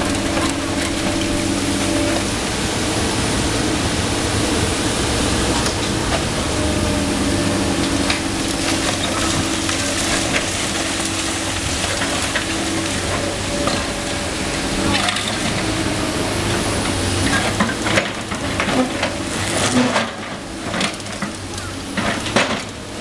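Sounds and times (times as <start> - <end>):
excavator diesel engine running: 0.0 - 23.0
debris cracking and crunching: 7.7 - 15.6.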